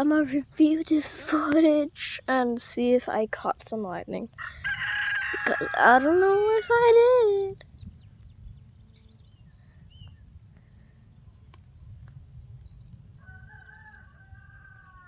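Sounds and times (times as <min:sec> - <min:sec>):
drawn-out bird call: 0:04.3 - 0:15.0
bird chirping: 0:07.1 - 0:14.1.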